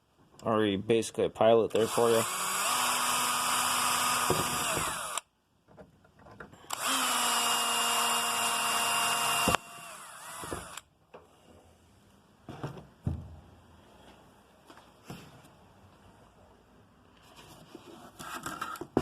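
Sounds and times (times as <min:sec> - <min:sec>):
electric drill boring into plastic: 0:01.8 - 0:05.3, 0:06.7 - 0:10.9.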